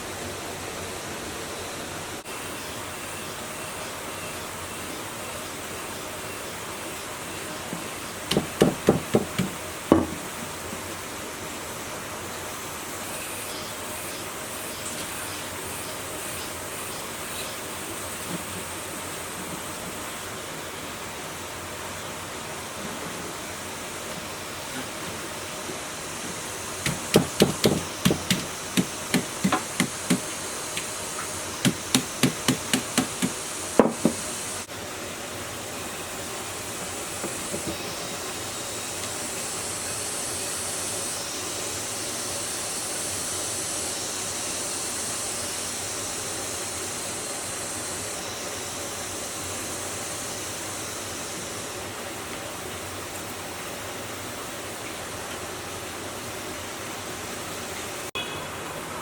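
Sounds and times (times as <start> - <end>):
steady hiss: 0.0 - 59.0
sharp knocks: 8.3 - 10.3, 26.8 - 30.9, 31.6 - 34.2.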